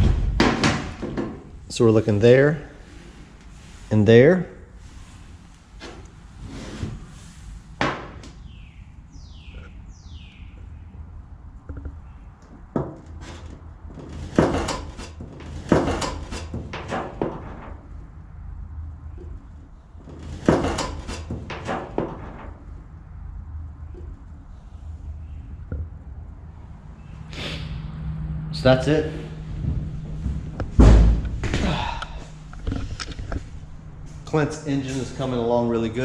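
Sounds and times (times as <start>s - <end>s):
hard objects knocking and clattering: 0.0s - 1.5s.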